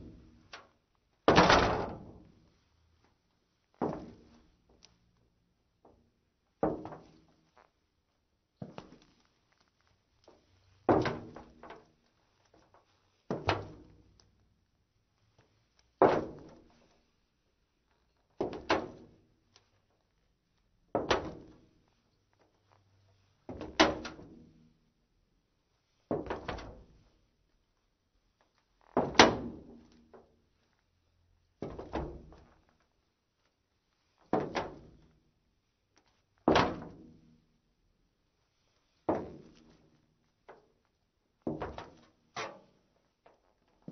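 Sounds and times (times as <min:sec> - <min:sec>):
heeled shoes walking on metal: 0:03.7 - 0:04.9, 0:08.6 - 0:11.8, 0:39.1 - 0:39.8.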